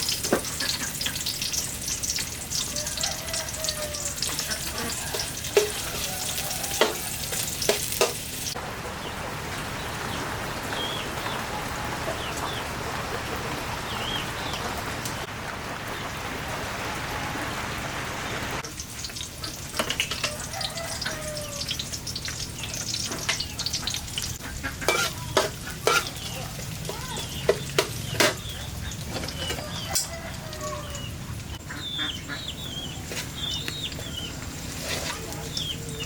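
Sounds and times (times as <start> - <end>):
food frying in a pan: 0.0 - 32.4, 33.0 - 36.0
chickens clucking: 0.1 - 15.3, 19.3 - 36.0
utensil knocking on pan: 5.1 - 8.2, 24.8 - 26.1, 27.2 - 28.4
heavy rain: 8.5 - 18.6.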